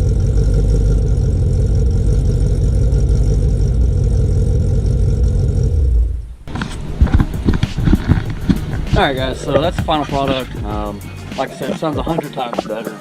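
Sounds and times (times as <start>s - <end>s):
car engine idling: 0.0s - 12.4s.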